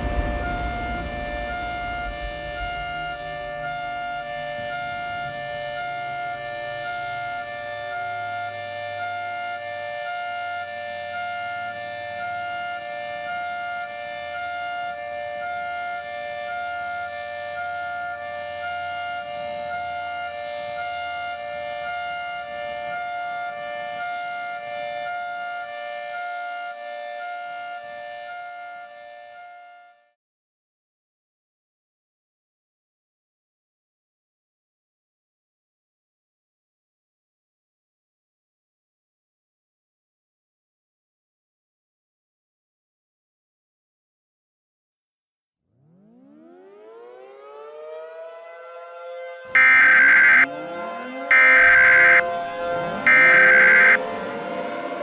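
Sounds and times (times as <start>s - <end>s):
high pulsing note: 49.6s - 50.7s, 51.3s - 54.8s
music of steady held tones: 49.6s - 54.6s.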